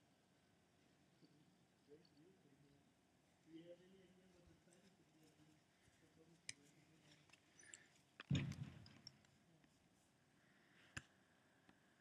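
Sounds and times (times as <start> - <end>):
soft thump: 8.3 - 8.9.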